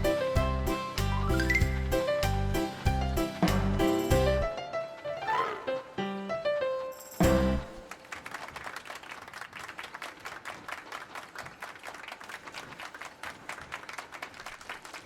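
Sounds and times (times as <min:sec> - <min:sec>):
crowd applauding: 0:07.7 - 0:15.0.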